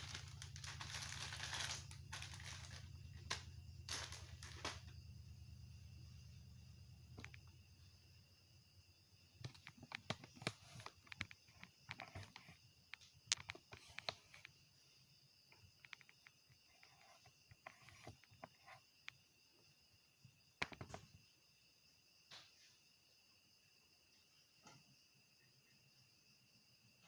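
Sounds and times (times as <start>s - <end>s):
insects chirping: 0.0s - 27.0s
sharp clicks and light knocks: 9.4s - 14.5s, 15.5s - 16.5s.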